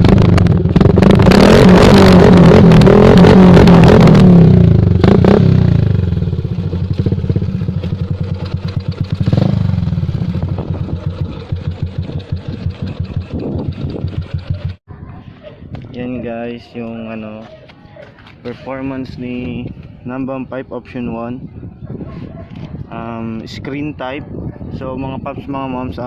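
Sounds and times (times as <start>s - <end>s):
motorcycle engine revving: 0.0s - 14.8s.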